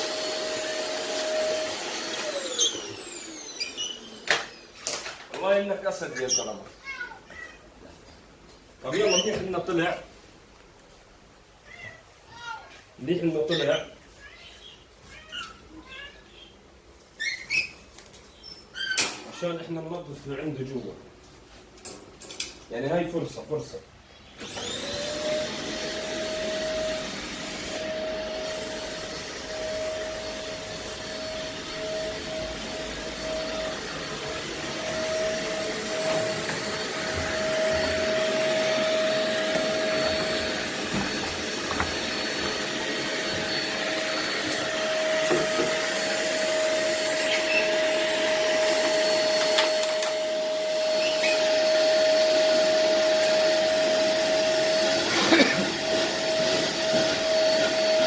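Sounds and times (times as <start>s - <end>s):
vacuum cleaner whining: 0.0s - 6.8s, 7.7s - 10.1s, 24.3s - 58.0s.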